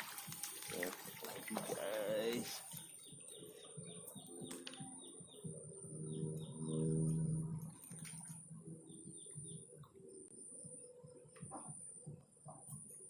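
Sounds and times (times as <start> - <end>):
low steady hum: 0.0 - 13.0
small birds chirping: 0.2 - 13.0
high-pitched whine: 3.8 - 13.0.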